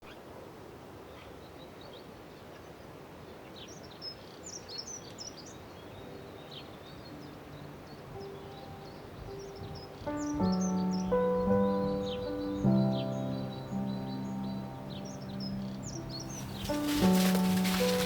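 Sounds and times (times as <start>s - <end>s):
small birds chirping: 1.0s - 18.0s
faint held musical notes: 5.8s - 18.0s
outdoor hiss: 16.0s - 18.0s.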